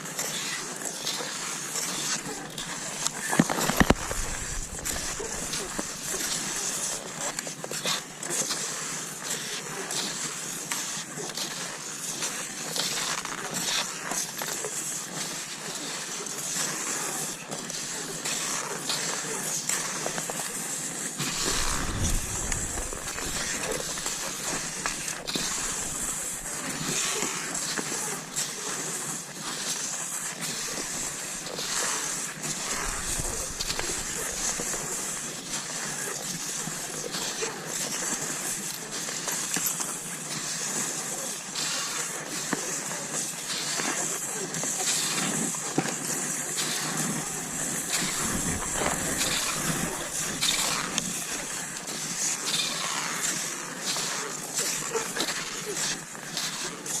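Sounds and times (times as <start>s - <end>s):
clicks of ski strides and poles: 0.0s - 57.0s
skis hissing over snow: 0.2s - 57.0s
low thump: 21.2s - 24.6s.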